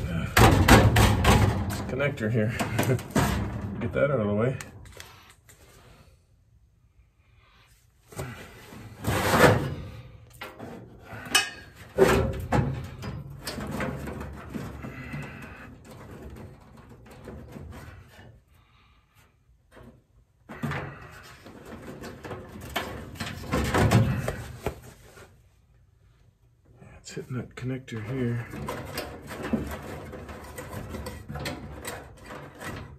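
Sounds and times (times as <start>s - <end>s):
metal sliding and scraping: 0.0s - 4.1s, 8.2s - 18.4s, 28.1s - 32.9s.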